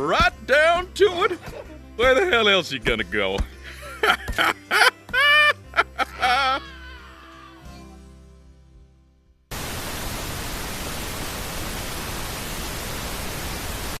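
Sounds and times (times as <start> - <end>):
tv static hiss: 9.5 - 14.0.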